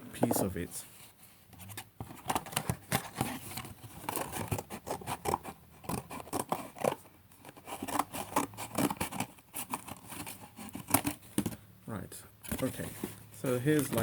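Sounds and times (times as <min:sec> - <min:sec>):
scissors cutting cardboard: 0:02.0 - 0:11.3.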